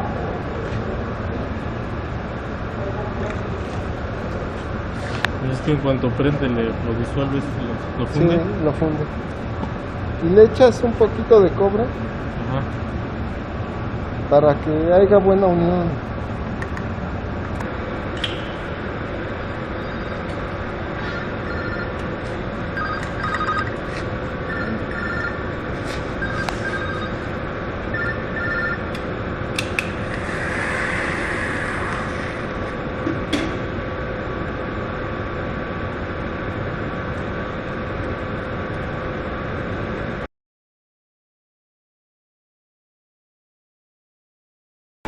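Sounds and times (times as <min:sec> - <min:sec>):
industrial plant noise: 0:00.0 - 0:40.3
paired electronic beeps: 0:19.8 - 0:20.4, 0:21.0 - 0:21.9, 0:22.8 - 0:23.8, 0:24.5 - 0:25.4, 0:26.1 - 0:27.3
weld charge fizzing hiss: 0:30.0 - 0:32.6.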